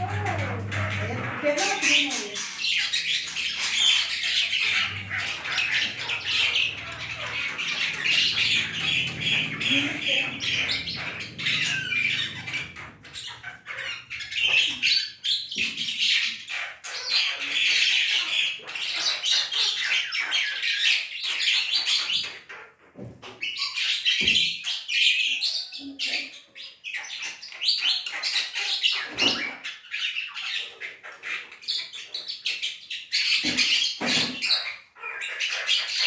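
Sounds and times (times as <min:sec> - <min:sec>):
myna squawking and chattering: 0:00.0 - 0:20.1.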